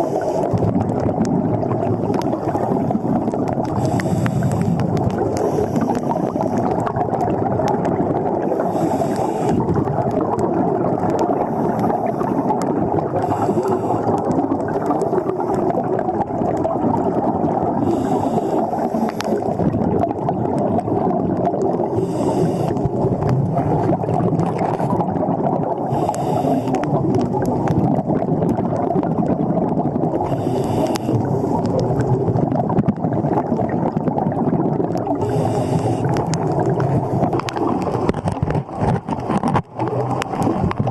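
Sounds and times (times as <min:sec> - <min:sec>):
diver breathing through regulator: 0:00.0 - 0:00.6, 0:01.9 - 0:06.9, 0:08.5 - 0:09.8, 0:11.4 - 0:12.6, 0:13.2 - 0:14.3, 0:17.8 - 0:19.6, 0:21.8 - 0:23.3, 0:25.8 - 0:27.0, 0:30.2 - 0:31.8, 0:35.2 - 0:36.3
underwater water rush: 0:00.0 - 0:40.9.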